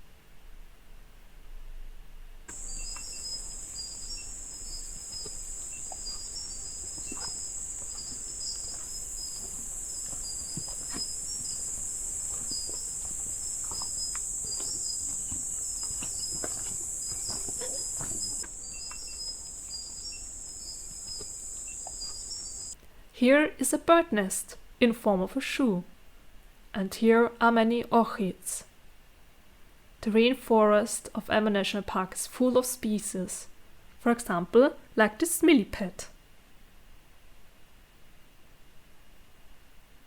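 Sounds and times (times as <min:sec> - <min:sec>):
faint clicks and rustles: 0:02.5 - 0:22.8
insects shrilling: 0:02.5 - 0:22.8
rapidly repeating chirp: 0:02.6 - 0:22.8.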